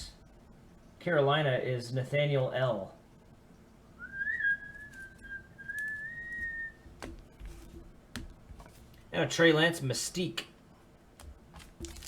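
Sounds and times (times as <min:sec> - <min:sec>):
person whistling long note: 0:04.0 - 0:06.8.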